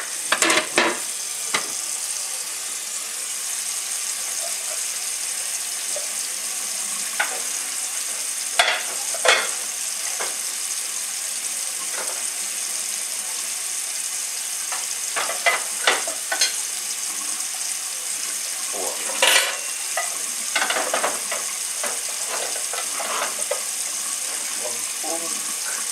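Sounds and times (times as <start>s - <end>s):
tap water running into sink: 0.0s - 25.9s
dishes clinking: 0.3s - 1.7s, 8.6s - 10.4s, 14.7s - 16.6s, 18.9s - 23.7s.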